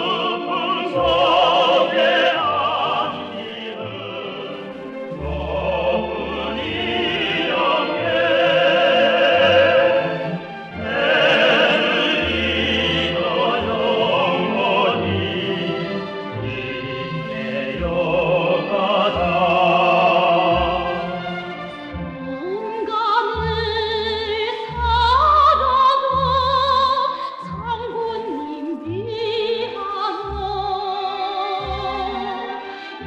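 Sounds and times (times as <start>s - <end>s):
operatic singing with vibrato: 0.0s - 33.0s
orchestral accompaniment: 0.0s - 33.0s.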